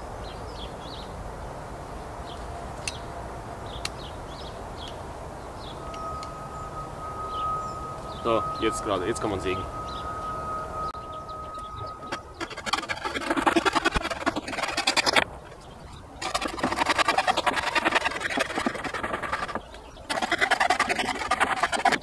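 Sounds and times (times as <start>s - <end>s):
saw cutting wood: 11.4s - 15.6s, 16.2s - 22.0s.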